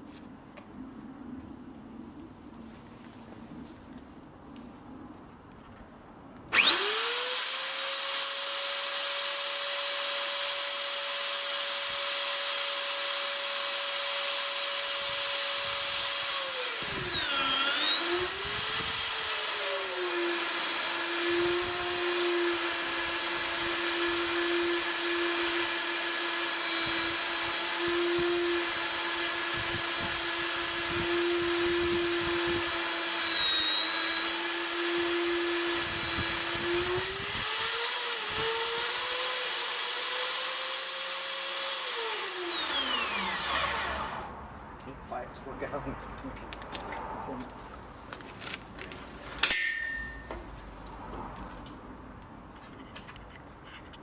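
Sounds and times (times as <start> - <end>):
drill motor whining: 6.5 - 44.3.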